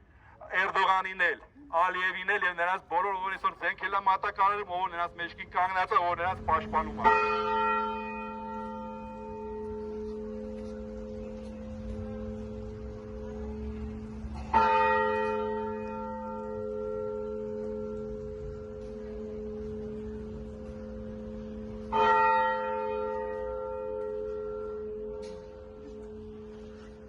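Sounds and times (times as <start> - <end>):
church bell tolling: 6.3 - 27.0.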